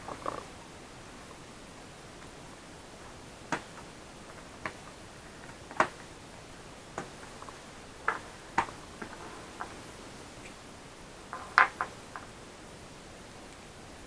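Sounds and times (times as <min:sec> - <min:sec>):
small tools clicking and tapping: 0:11.3 - 0:12.3.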